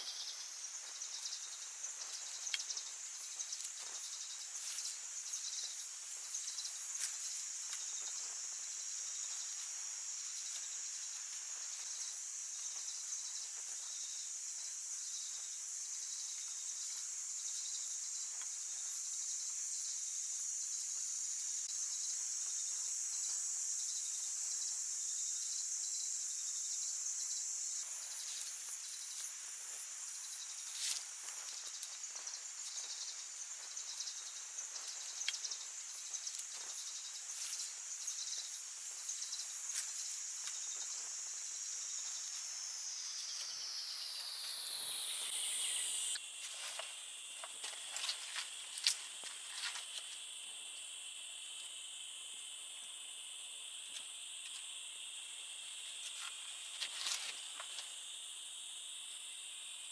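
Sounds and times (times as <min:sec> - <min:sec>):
insects droning: 0:00.0 - 0:59.9.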